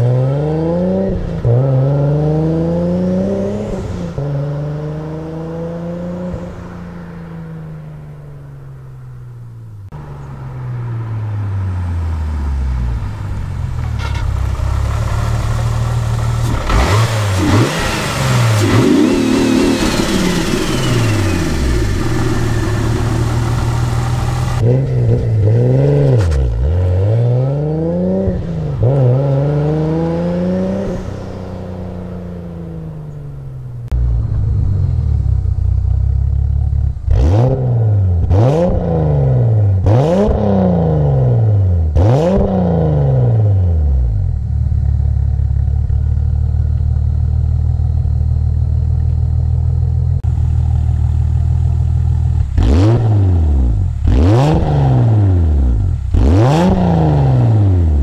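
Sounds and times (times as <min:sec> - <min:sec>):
car engine revving: 0:00.0 - 0:58.0
engine idling: 0:12.9 - 0:17.4, 0:19.2 - 0:24.6, 0:33.6 - 0:37.1, 0:44.1 - 0:52.6.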